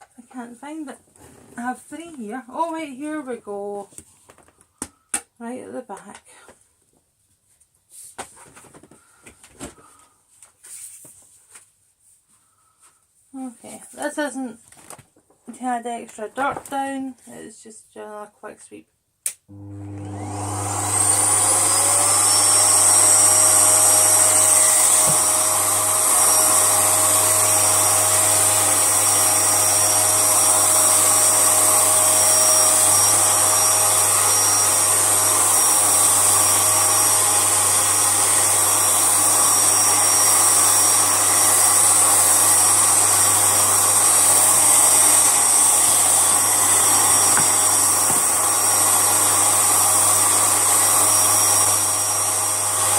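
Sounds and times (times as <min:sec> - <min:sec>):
vacuum cleaner motor whining: 0:19.5 - 0:52.9.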